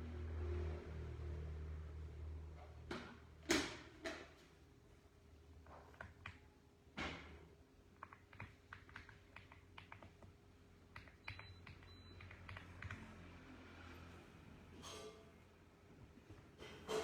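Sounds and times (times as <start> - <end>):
mechanical keyboard typing: 8.0 - 13.1.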